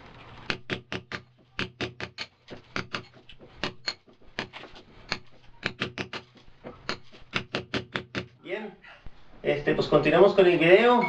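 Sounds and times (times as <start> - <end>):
mallet striking chisel into masonry: 0.5 - 8.4.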